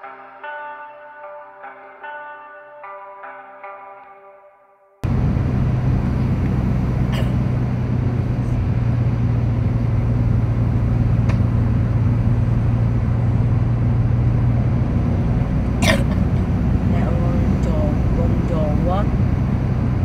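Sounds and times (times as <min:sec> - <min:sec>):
low hum: 0:05.0 - 0:20.0
vehicle engine and road noise: 0:05.0 - 0:20.0.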